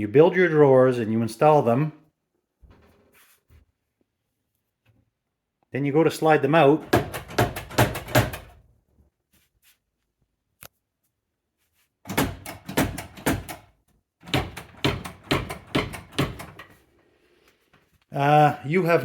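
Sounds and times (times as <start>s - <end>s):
drawers knocking and clattering: 6.8s - 8.7s, 12.1s - 16.8s.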